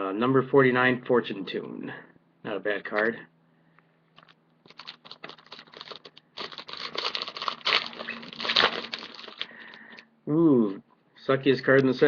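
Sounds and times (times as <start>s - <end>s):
foil wrapper crinkling and tearing: 4.2s - 10.0s.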